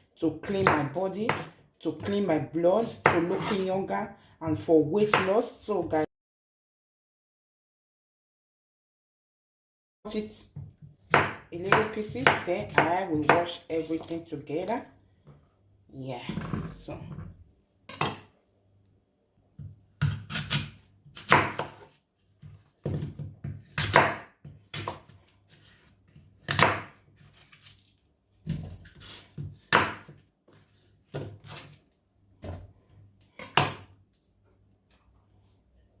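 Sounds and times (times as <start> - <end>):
knife chopping on cutting board: 0.4 - 2.2, 2.8 - 3.7, 5.0 - 5.4, 10.6 - 14.2, 19.6 - 27.6, 28.5 - 31.8, 33.4 - 33.9.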